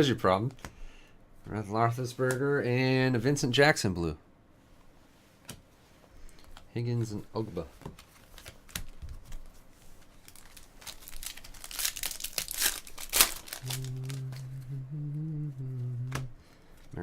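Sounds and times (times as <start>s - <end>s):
foil packs tearing and crinkling: 10.1s - 14.5s
person humming a low note: 13.5s - 16.4s.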